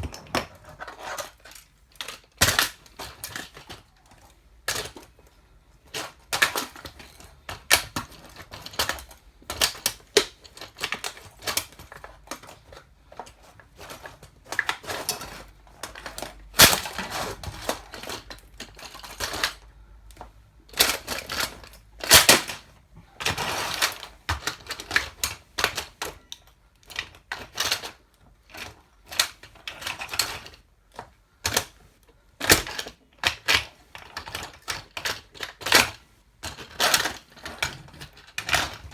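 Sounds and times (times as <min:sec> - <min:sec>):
toy car cracking under heels: 0:00.0 - 0:03.9, 0:13.8 - 0:19.7, 0:20.7 - 0:30.6, 0:32.4 - 0:38.9.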